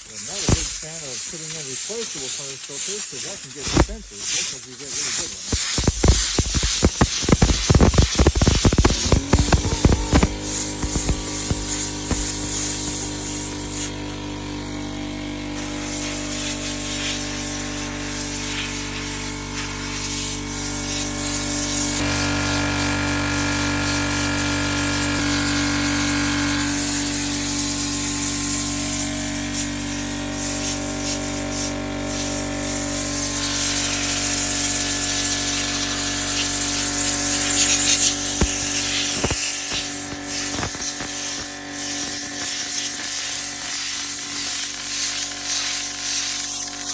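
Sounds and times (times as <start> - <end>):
compressed air hissing: 0.0 - 46.9
steady hum with tones: 5.5 - 42.3.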